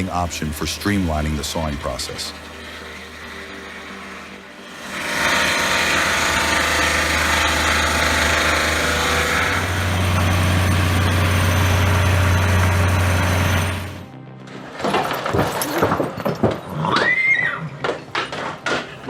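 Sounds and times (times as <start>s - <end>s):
sawmill engine running: 0.0s - 15.1s.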